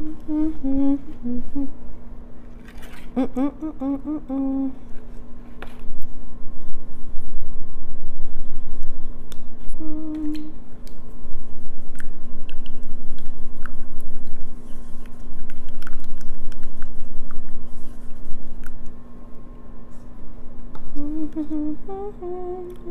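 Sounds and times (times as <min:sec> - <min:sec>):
person humming a note: 0:00.0 - 0:01.8, 0:03.2 - 0:04.8, 0:09.7 - 0:10.6, 0:20.9 - 0:22.9
steady low hum: 0:00.0 - 0:22.9.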